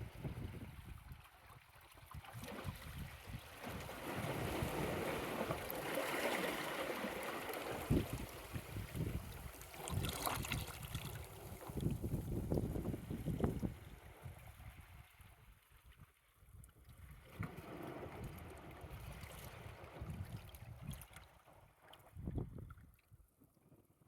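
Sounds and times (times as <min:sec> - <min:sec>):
small waves washing over rocks: 0:02.4 - 0:14.3
wind buffeting microphone: 0:07.8 - 0:14.4, 0:22.2 - 0:22.8.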